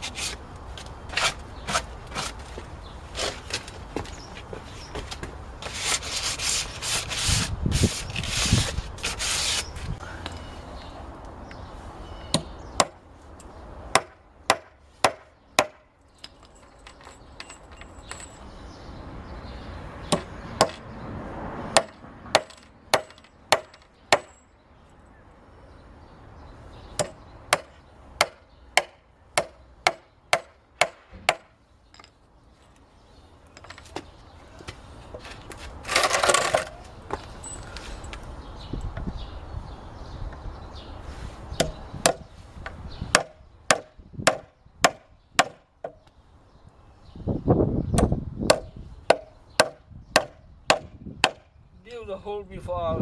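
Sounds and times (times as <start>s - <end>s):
hammer striking nails into wood: 13.9s - 15.8s, 20.1s - 20.8s, 21.7s - 24.4s, 27.0s - 31.5s, 41.6s - 42.2s, 43.1s - 46.0s, 48.0s - 51.5s.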